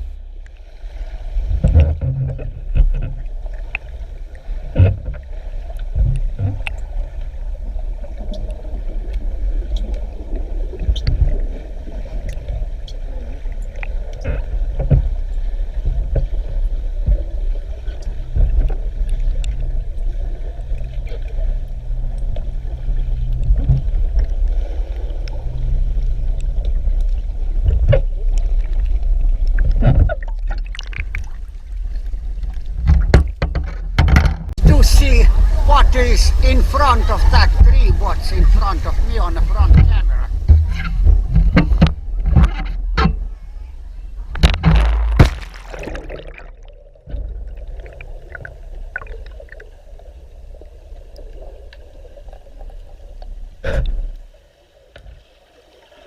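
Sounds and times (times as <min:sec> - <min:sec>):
underwater rumble of moving water: 0:00.0 - 0:56.0
clicks and knocks: 0:32.8 - 0:34.6, 0:44.3 - 0:45.6.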